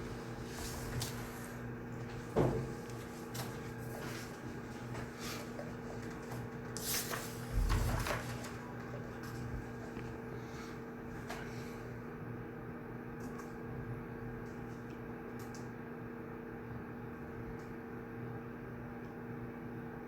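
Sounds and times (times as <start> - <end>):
small knocks and rustles: 2.0 - 10.1.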